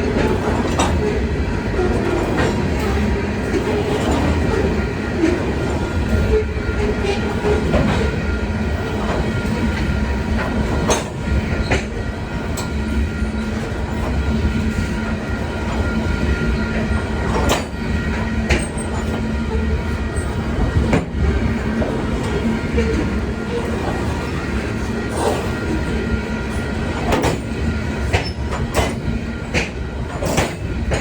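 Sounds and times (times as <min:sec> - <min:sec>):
train rumbling past: 0:00.0 - 0:31.0
wheels clacking over rail joints: 0:27.0 - 0:31.0.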